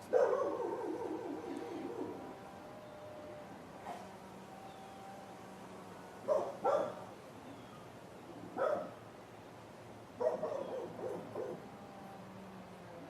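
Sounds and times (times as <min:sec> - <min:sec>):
dog barking: 0:00.1 - 0:02.1, 0:06.3 - 0:07.0, 0:08.6 - 0:09.0, 0:10.2 - 0:11.6.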